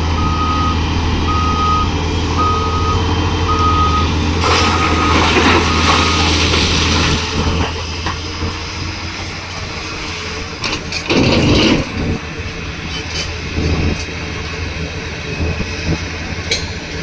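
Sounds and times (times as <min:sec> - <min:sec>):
reversing beeper: 0:00.0 - 0:06.4
heavy diesel engines running: 0:00.0 - 0:17.0
rumble with clatter: 0:04.4 - 0:17.0.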